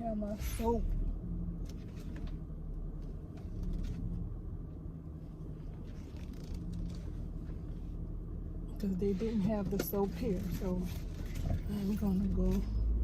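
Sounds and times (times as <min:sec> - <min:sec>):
car cabin rumble: 0:00.0 - 0:13.0.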